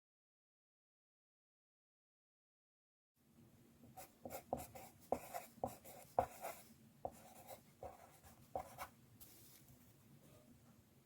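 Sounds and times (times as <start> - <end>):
faint steady hum: 3.2 - 11.0.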